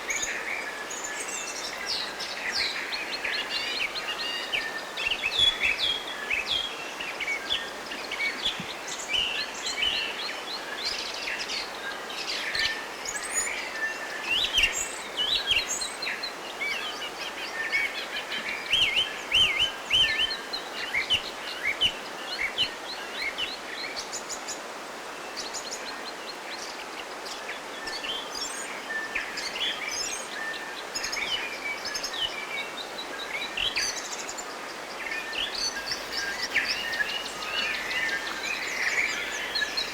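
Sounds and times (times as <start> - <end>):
background hiss: 0.0 - 39.9
songbirds chirping and singing: 29.2 - 39.9.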